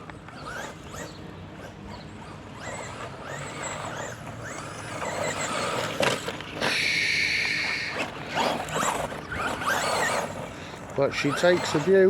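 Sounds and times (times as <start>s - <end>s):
rc truck electric motor whining: 0.0s - 12.0s
steady high whine: 4.2s - 11.8s.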